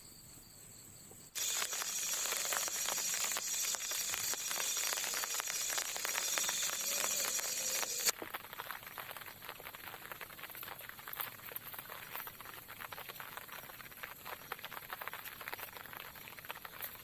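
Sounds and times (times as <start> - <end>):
loud steady hiss: 1.4 - 8.1
rain pattering: 1.4 - 17.0.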